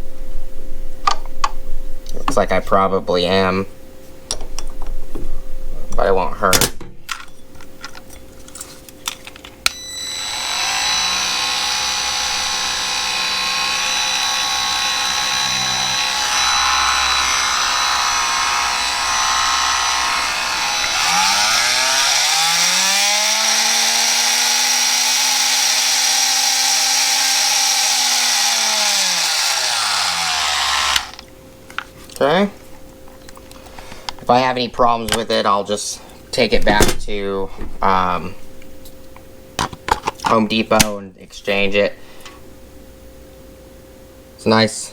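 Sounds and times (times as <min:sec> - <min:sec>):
oscillating multi-tool buzzing: 0:09.6 - 0:31.2.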